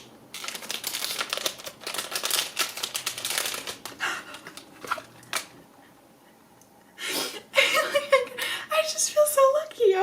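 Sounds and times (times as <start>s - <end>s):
packaging crinkling and rustling: 0.0s - 5.6s.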